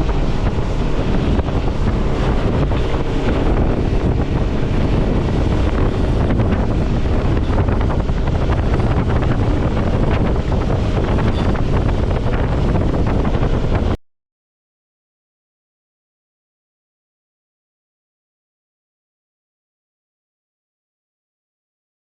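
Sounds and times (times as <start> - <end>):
boat engine: 0.0 - 14.0
water: 0.0 - 14.0
wind buffeting microphone: 0.0 - 14.0.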